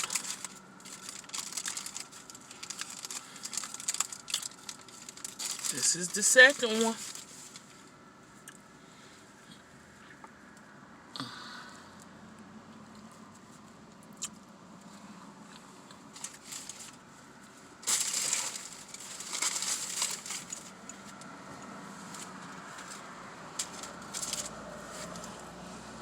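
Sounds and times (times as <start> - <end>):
paper wrapper crinkling: 0.0 - 7.8, 16.1 - 17.0, 17.8 - 25.4.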